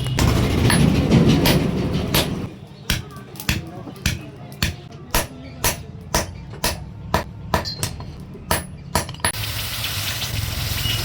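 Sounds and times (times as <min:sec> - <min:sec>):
hammer striking metal on anvil: 0:01.4 - 0:09.4.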